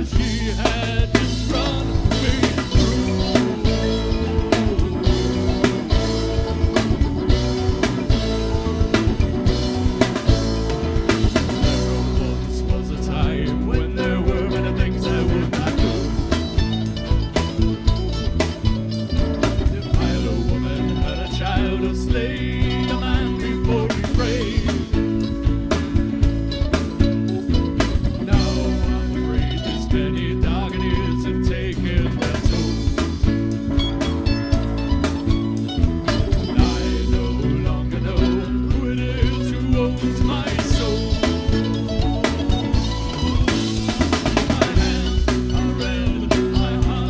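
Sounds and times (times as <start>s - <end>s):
wavering melodic line: 0.0s - 29.7s
bass: 0.0s - 47.0s
drums keeping a steady beat: 0.0s - 47.0s
guitar: 0.0s - 47.0s.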